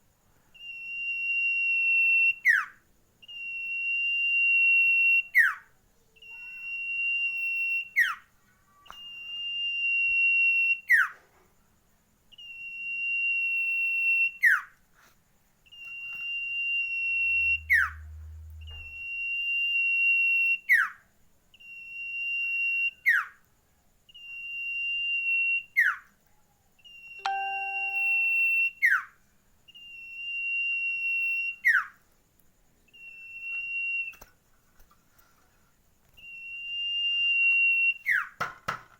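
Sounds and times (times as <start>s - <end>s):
bird whistling song: 15.7s - 21.0s, 21.6s - 23.4s, 24.1s - 26.1s, 26.8s - 29.1s, 29.7s - 32.0s, 36.2s - 38.4s.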